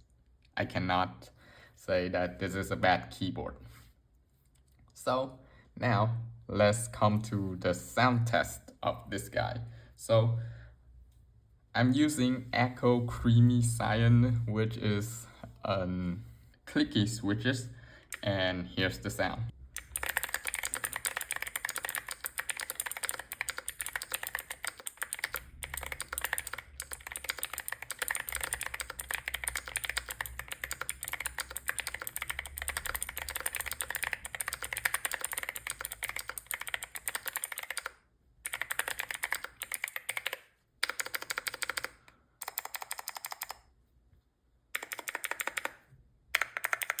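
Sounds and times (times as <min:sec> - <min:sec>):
mechanical keyboard typing: 0:19.8 - 0:43.6, 0:44.7 - 0:47.0.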